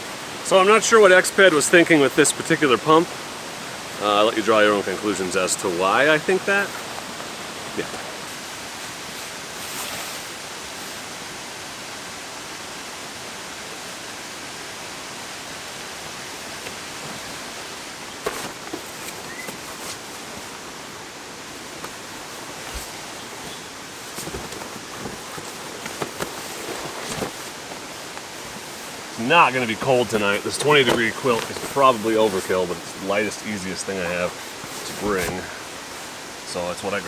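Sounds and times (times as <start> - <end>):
waterfall rushing: 0.0 - 9.6, 27.4 - 37.0.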